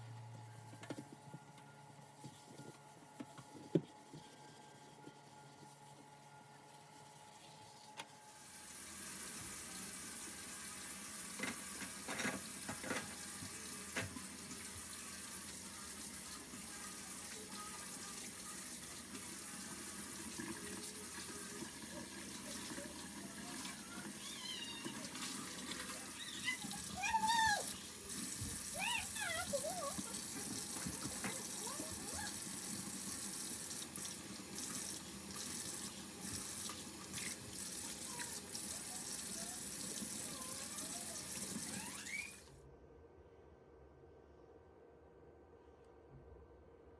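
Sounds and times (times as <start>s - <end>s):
tap water running into sink: 8.0s - 42.5s.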